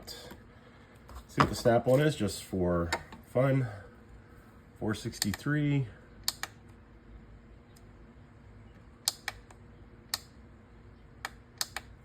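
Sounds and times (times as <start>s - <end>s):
faint steady hum: 0.0s - 12.0s
small sharp clicks and taps: 11.2s - 11.9s.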